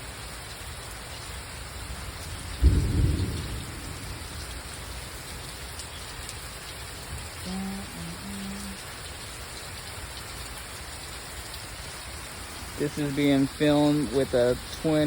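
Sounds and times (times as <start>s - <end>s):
heavy rain hissing: 0.0s - 15.0s
thunder crack: 2.6s - 4.6s.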